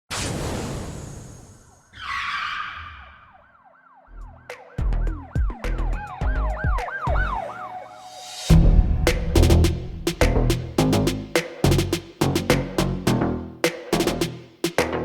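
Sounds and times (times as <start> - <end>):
warbling siren-like wail: 1.7 - 8.5
loud beat-driven music: 4.5 - 7.4, 8.5 - 15.0
whoosh: 7.9 - 10.8
heavy bass hits: 8.5 - 13.2.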